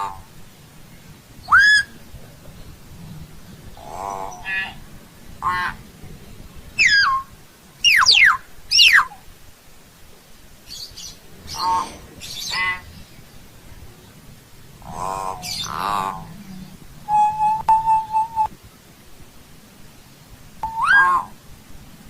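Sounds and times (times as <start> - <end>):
myna bird whistling calls: 1.4 - 2.0, 6.8 - 9.2, 10.7 - 12.9, 14.9 - 16.2, 17.1 - 18.5, 20.6 - 21.4.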